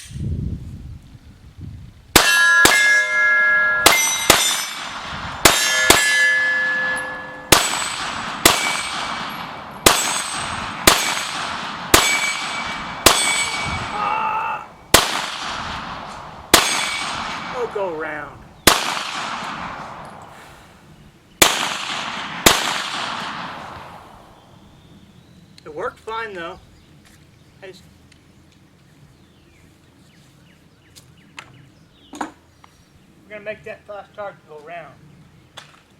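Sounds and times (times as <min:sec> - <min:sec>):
pistol shots: 0:02.2 - 0:02.9, 0:03.8 - 0:14.0, 0:14.9 - 0:20.3, 0:21.4 - 0:24.4
steel targets clanging: 0:02.2 - 0:20.4.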